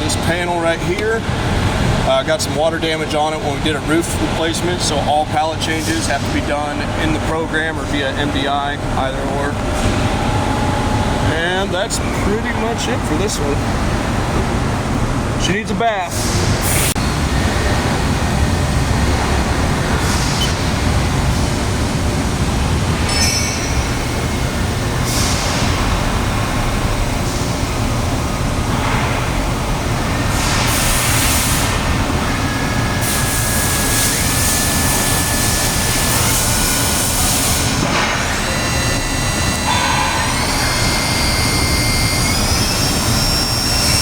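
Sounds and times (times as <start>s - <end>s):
machinery noise: 0.0s - 44.0s
loud air hissing: 16.1s - 18.0s, 24.6s - 26.6s, 30.1s - 44.0s
rising whine: 38.0s - 44.0s.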